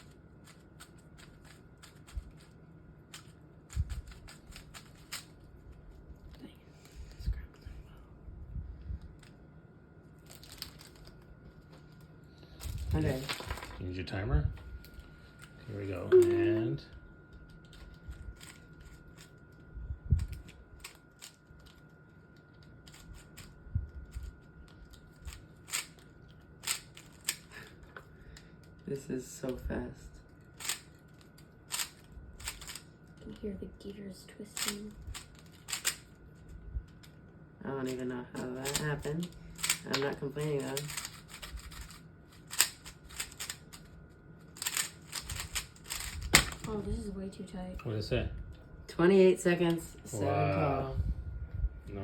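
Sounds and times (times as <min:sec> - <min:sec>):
puzzle cube clicking: 0:31.7 - 0:32.8, 0:34.6 - 0:36.0, 0:38.6 - 0:39.0, 0:39.6 - 0:40.1, 0:40.7 - 0:43.9, 0:44.6 - 0:46.7.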